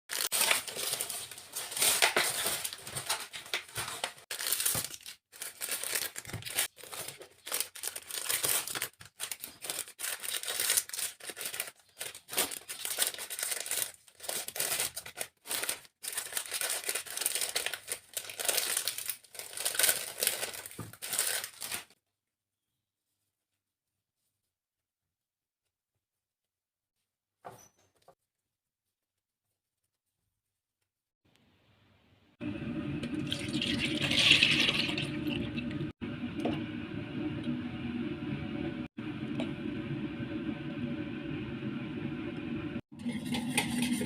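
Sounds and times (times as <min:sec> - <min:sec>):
pastry crackling and tearing: 0:00.1 - 0:21.9.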